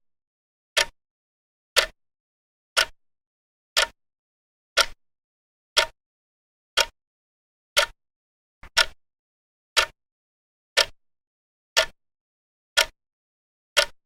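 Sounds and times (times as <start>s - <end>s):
mechanical clock ticking: 0.8s - 1.0s, 1.8s - 2.0s, 2.8s - 3.0s, 3.8s - 4.0s, 4.8s - 5.0s, 5.8s - 6.0s, 6.8s - 7.0s, 7.8s - 8.0s, 8.6s - 9.0s, 9.8s - 10.0s, 10.8s - 11.0s, 11.8s - 12.0s, 12.8s - 13.0s, 13.8s - 14.0s.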